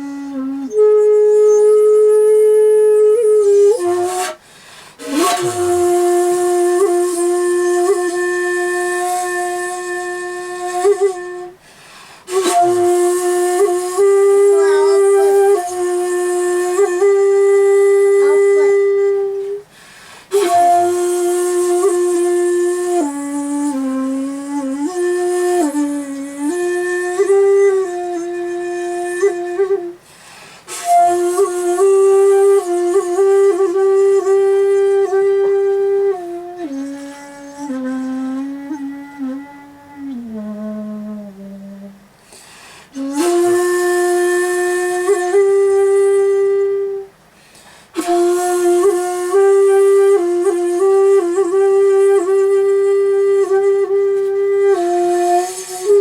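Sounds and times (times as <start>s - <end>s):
bamboo flute playing: 0.0s - 56.0s.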